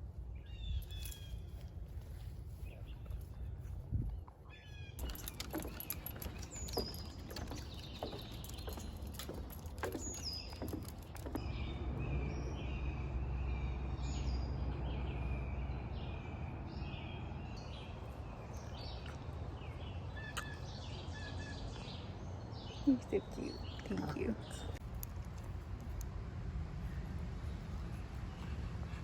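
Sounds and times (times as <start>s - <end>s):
birds singing: 2.6s - 24.8s.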